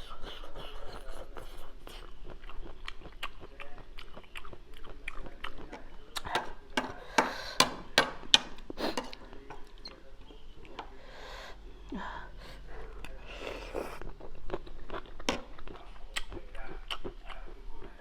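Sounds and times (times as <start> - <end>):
close-up chewing mouth smacks: 0.0 - 6.4, 13.0 - 18.0.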